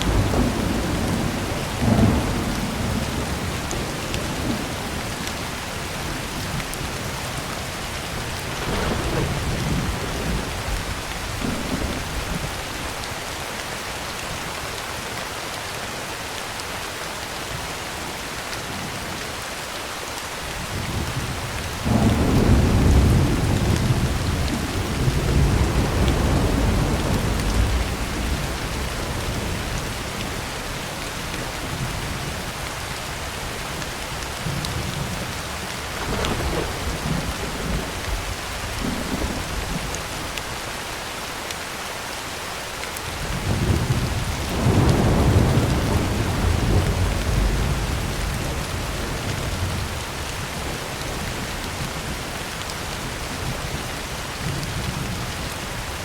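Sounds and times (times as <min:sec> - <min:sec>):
rolling thunder: 0:00.0 - 0:05.3, 0:08.0 - 0:12.7, 0:20.6 - 0:32.4, 0:34.4 - 0:40.3, 0:43.2 - 0:52.1
heavy rain on a tin roof: 0:00.0 - 0:56.0.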